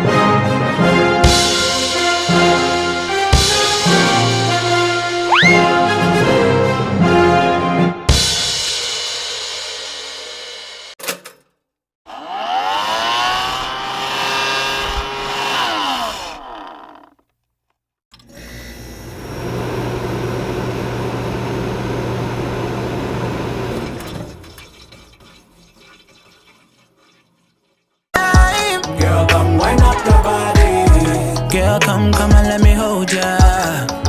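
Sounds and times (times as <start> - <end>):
phone alert rising pitch glides: 5.3 - 5.8.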